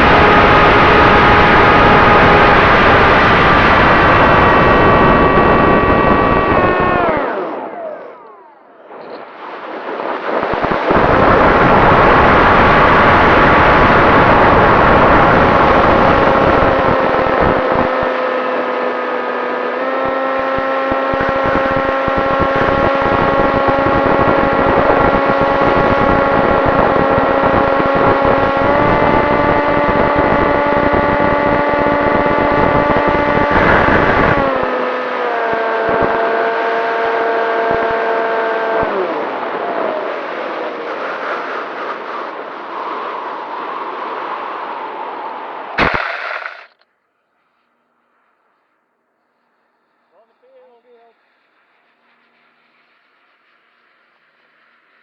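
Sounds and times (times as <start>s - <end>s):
wind rush and buffeting: 0.0s - 18.2s, 20.9s - 34.9s
electric motor and propeller whine: 0.0s - 43.6s, 45.8s - 46.8s.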